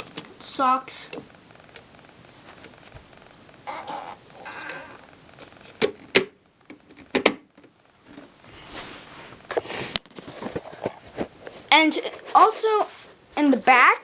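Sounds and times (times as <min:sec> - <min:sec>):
sharp plastic clicks and knocks: 0:01.1 - 0:04.4, 0:05.0 - 0:08.3
soft plastic rustling: 0:08.0 - 0:13.8.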